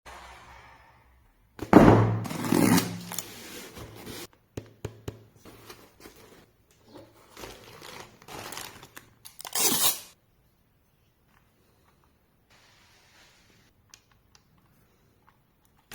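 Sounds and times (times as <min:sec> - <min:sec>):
packaging crinkling and scraping: 0:02.2 - 0:04.3, 0:05.5 - 0:10.2
packaging tearing: 0:07.3 - 0:10.2.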